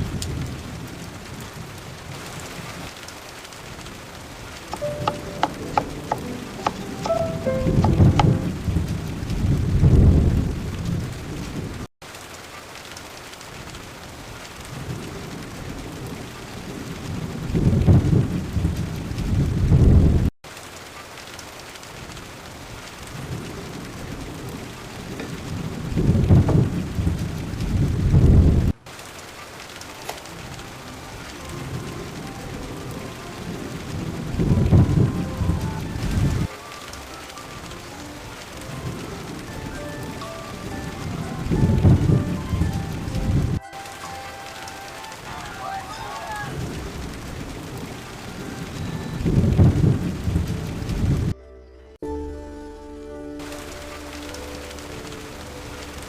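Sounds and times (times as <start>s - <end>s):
rolling thunder rumble: 0.0s - 3.0s, 3.6s - 11.9s, 14.6s - 20.3s, 22.1s - 28.8s, 31.4s - 36.5s, 38.4s - 43.6s, 46.5s - 51.3s
steady rain falling: 0.0s - 51.4s, 53.4s - 56.0s.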